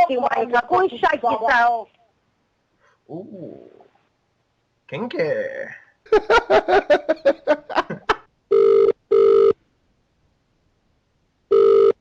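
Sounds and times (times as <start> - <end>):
telephone ringing tone: 8.5 - 9.6, 11.5 - 12.0.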